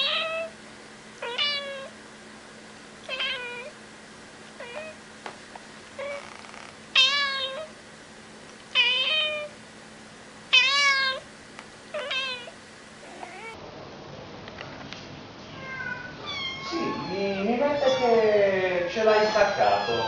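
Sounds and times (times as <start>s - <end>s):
cat meowing: 0.0s - 0.5s, 1.2s - 1.9s, 3.1s - 3.7s, 4.6s - 5.0s, 6.0s - 7.7s, 8.8s - 9.5s, 10.5s - 11.2s, 11.9s - 13.6s, 15.5s - 18.2s, 19.0s - 20.0s.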